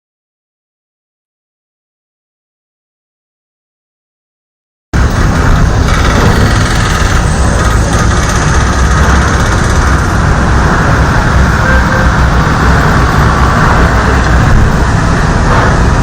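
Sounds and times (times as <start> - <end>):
vehicle engine and traffic: 5.0 - 16.0.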